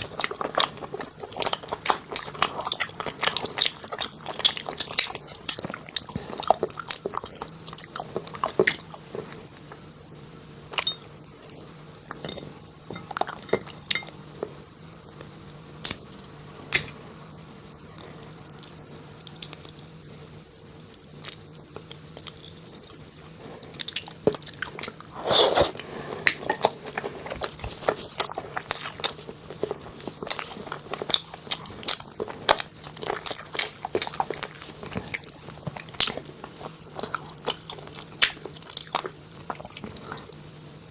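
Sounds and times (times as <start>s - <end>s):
close-miked chewing and crunching: 0.0s - 9.8s, 20.7s - 40.5s
faint low hum: 0.0s - 40.9s.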